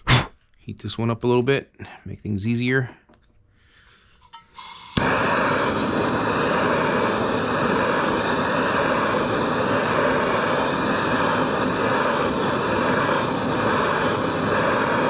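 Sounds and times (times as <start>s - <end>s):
heat gun blowing: 4.4s - 15.0s.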